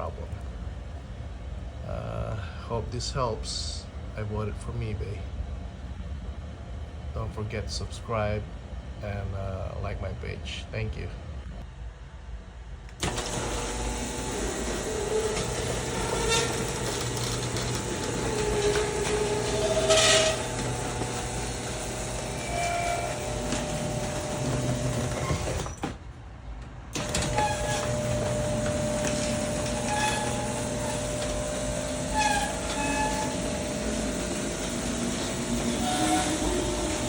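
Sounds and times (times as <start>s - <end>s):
garage door opener motor hum: 12.9s - 26.2s, 26.8s - 37.0s
garage door rattling and squeaking: 13.0s - 26.2s, 26.9s - 37.0s.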